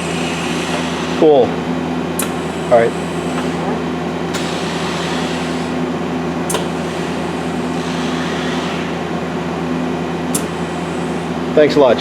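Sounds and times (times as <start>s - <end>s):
lathe humming: 0.0s - 12.0s
sharp clicks: 2.2s - 2.4s, 10.3s - 10.6s.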